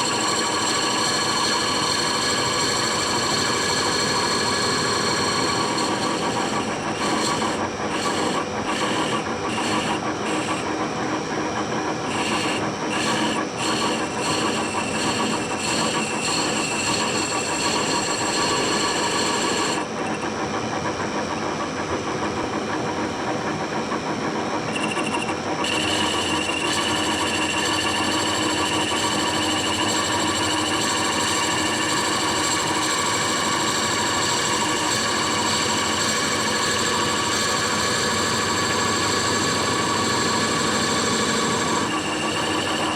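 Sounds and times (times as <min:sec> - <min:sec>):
high-pitched cutting scrape: 0:00.0 - 0:10.6, 0:12.1 - 0:20.2, 0:38.4 - 0:42.9
lathe humming: 0:00.0 - 0:20.2, 0:24.6 - 0:42.9.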